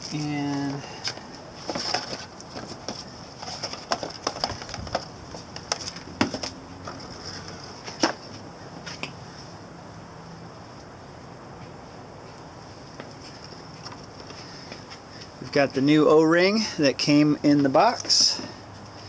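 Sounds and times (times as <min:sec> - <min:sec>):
hands handling small parts: 0:00.0 - 0:09.2.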